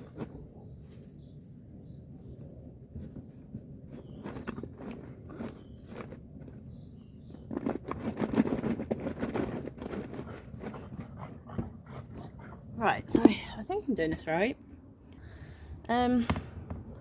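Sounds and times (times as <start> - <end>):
crunching and scraping handling: 0.0 - 13.4.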